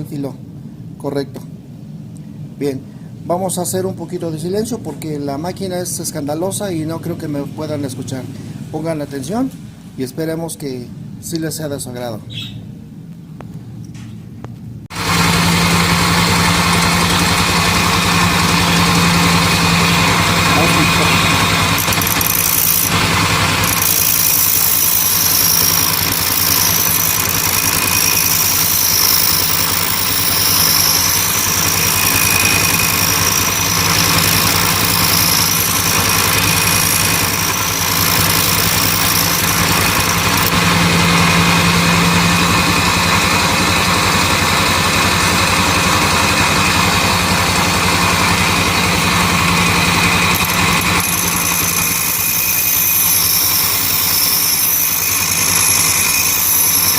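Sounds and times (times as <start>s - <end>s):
bench grinder motor hum: 14.9s - 56.9s
blade grinding hiss: 19.5s - 40.6s, 49.7s - 56.9s.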